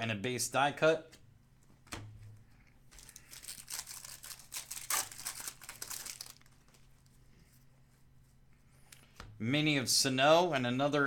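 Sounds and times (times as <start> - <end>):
card pack wrapper tearing and crinkling: 2.9 - 6.9.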